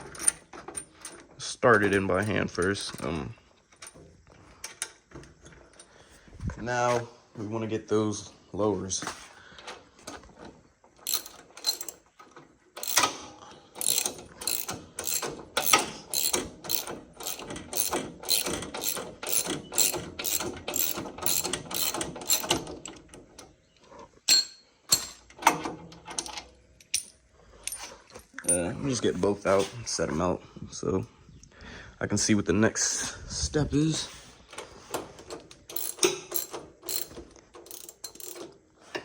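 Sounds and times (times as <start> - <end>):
ratchet wrench clicking: 11.1 - 12.0, 12.8 - 13.1, 13.8 - 22.6, 35.7 - 38.4.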